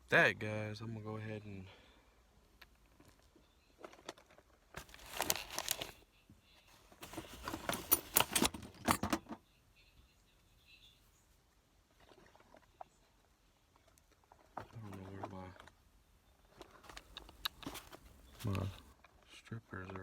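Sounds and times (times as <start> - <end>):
tools and parts clattering: 3.8 - 6.0, 7.0 - 9.4.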